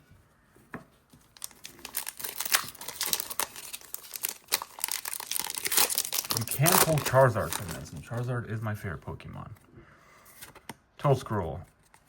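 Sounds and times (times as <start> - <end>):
foil wrapper crinkling and tearing: 1.3 - 8.3.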